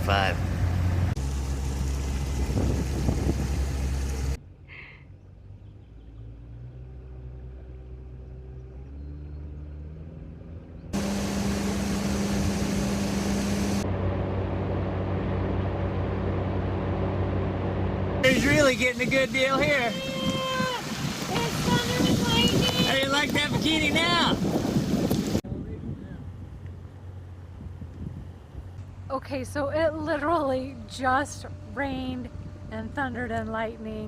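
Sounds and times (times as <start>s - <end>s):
water noise: 0.0s - 4.4s, 11.0s - 25.4s
boat engine droning: 0.0s - 24.4s, 28.3s - 34.0s
wind: 0.0s - 34.0s.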